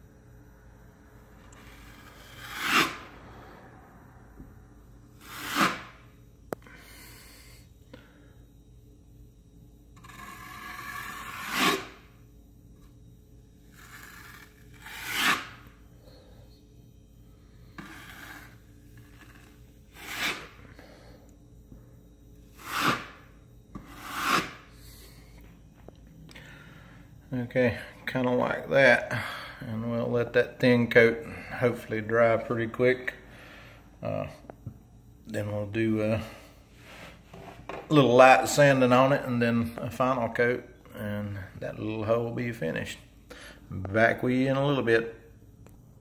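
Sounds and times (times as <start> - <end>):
trowel scraping wall: 1.6 - 3.0, 5.2 - 5.9, 10.0 - 12.0, 13.7 - 15.6, 17.8 - 20.6, 22.6 - 23.2, 23.8 - 24.6.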